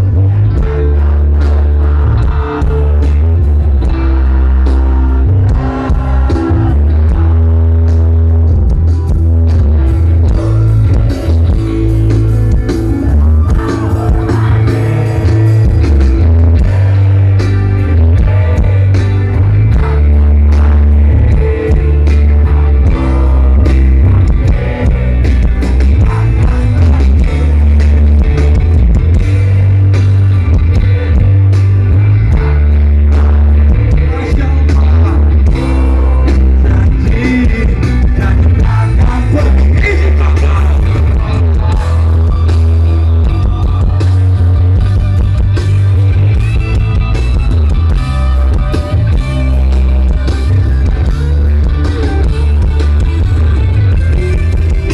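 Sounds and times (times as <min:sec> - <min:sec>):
drums: 0:00.0 - 0:54.9
electric guitar: 0:00.0 - 0:54.9
heavy bass: 0:00.0 - 0:54.9
person singing: 0:10.2 - 0:29.9, 0:32.3 - 0:44.2.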